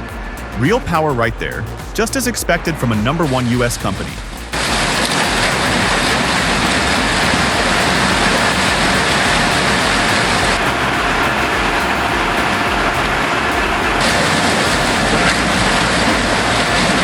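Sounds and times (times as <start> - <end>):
industrial shredder running: 4.6 - 17.0.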